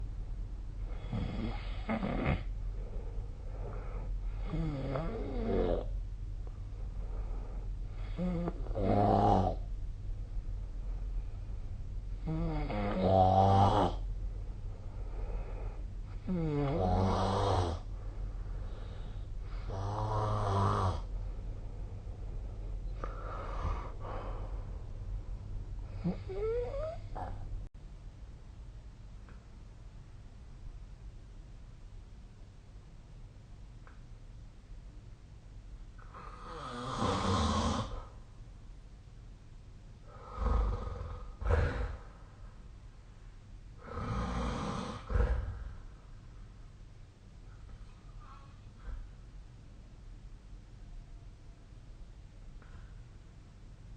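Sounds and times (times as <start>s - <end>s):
person snoring: 0.9s - 3.0s, 3.6s - 5.9s, 8.0s - 9.7s, 12.2s - 14.1s, 15.2s - 17.9s, 18.7s - 21.1s, 25.9s - 27.4s, 36.1s - 38.2s, 40.1s - 42.2s, 43.8s - 45.9s
faint breath: 2.6s - 4.6s, 6.6s - 8.3s, 14.2s - 16.2s, 17.8s - 19.8s, 21.0s - 26.5s, 40.0s - 42.7s, 44.9s - 46.2s, 47.6s - 49.3s.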